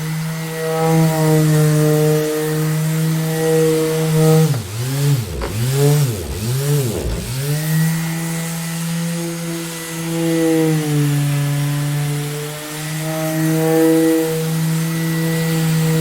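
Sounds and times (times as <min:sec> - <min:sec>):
orbital sander motor whining: 0:00.3 - 0:12.0.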